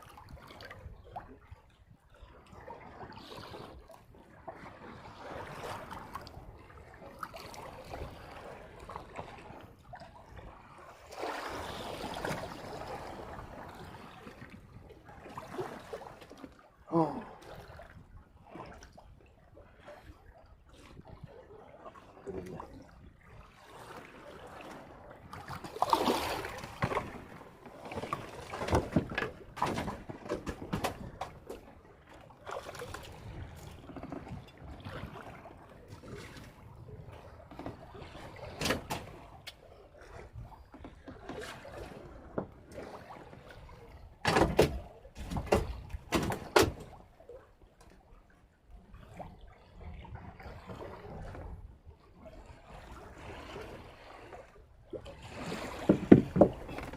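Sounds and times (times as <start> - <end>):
knocks and clatter on boat: 0.0 - 19.1, 19.7 - 48.2, 49.9 - 56.9
low wash of water: 0.0 - 56.9.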